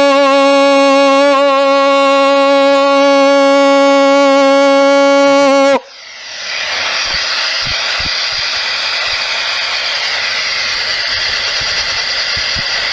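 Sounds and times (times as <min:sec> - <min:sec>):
held musical note: 0:00.0 - 0:05.9
steady rushing hiss: 0:05.9 - 0:12.9.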